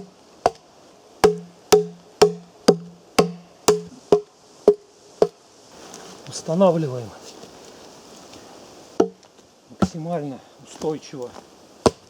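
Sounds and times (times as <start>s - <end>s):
axe chopping into log: 1.2s - 4.8s, 9.8s - 10.0s.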